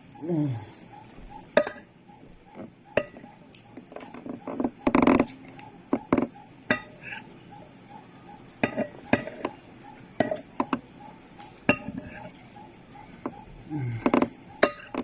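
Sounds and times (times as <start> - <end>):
cutlery on a plate: 6.7 - 7.2, 8.6 - 9.5, 10.2 - 10.8, 11.7 - 12.4, 14.6 - 15.0.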